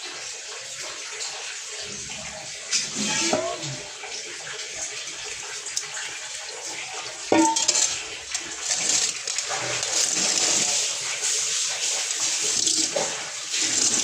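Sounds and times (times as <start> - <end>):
running water splashing: 0.0 - 14.0
part knocking on hard surface: 7.3 - 7.9.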